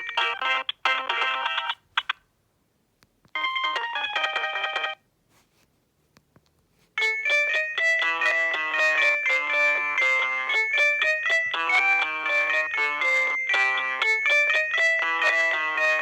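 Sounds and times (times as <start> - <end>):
electronic phone ringtones: 3.4 - 5.0, 7.0 - 16.0.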